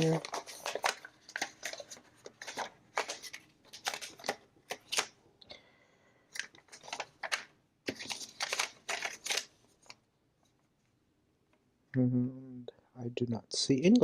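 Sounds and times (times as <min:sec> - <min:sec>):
paper rustling and crinkling: 0:00.0 - 0:05.2, 0:06.3 - 0:10.0.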